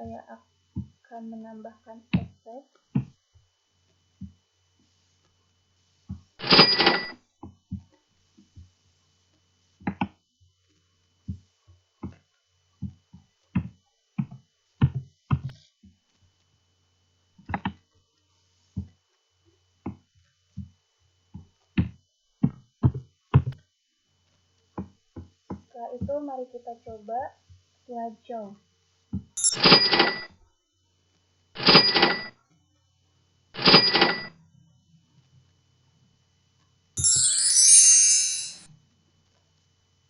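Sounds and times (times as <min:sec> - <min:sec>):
cash register sound effect: 0:06.4 - 0:07.2, 0:29.4 - 0:30.3, 0:31.6 - 0:32.3, 0:33.6 - 0:34.3, 0:37.0 - 0:38.7.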